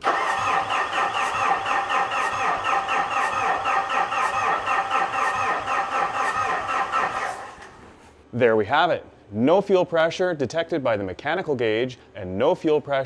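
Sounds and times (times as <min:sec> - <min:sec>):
starter cranking diesel engine: 0:00.0 - 0:08.0.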